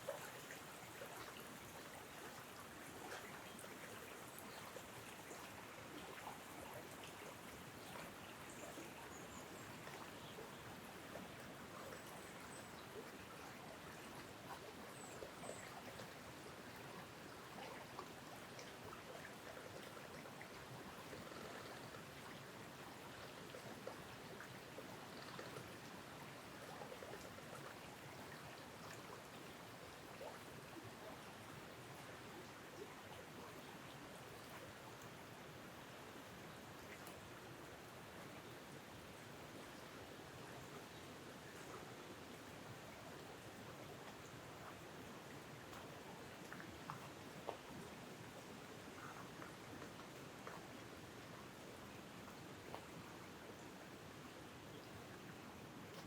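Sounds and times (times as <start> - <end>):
faint ticks: 25.0 - 25.8.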